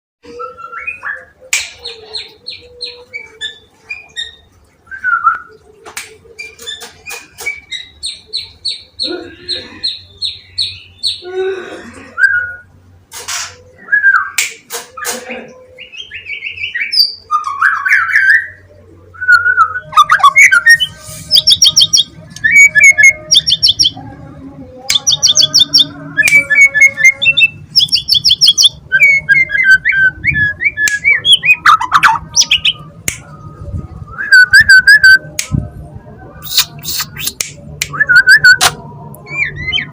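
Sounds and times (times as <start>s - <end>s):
songbird singing whistles and trills: 0.2s - 9.1s, 15.8s - 24.0s, 24.9s - 35.5s, 36.4s - 39.9s.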